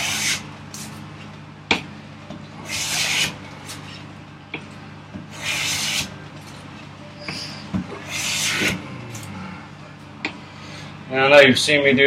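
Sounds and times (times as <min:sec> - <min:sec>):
hand plane shaving wood: 0:00.0 - 0:00.4, 0:02.6 - 0:03.4, 0:05.3 - 0:06.1, 0:07.4 - 0:08.8.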